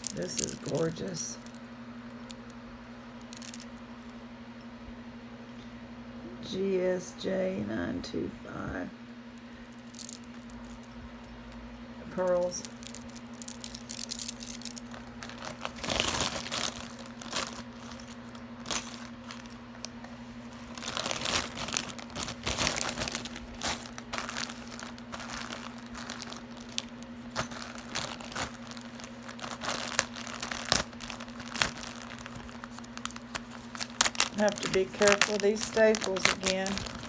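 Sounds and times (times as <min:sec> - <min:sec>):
plastic bags crinkling: 0:00.0 - 0:01.6, 0:03.2 - 0:03.8, 0:09.7 - 0:37.0
low electrical hum: 0:00.0 - 0:37.0
jewelry clicking and clinking: 0:03.2 - 0:03.8, 0:09.7 - 0:37.0.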